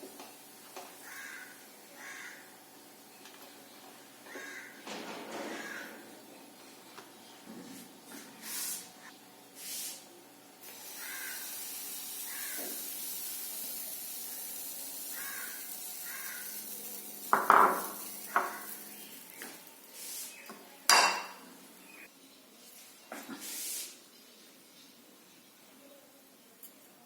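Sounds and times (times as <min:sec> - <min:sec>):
food sizzling on a hot griddle: 0:00.0 - 0:04.8, 0:10.6 - 0:22.1.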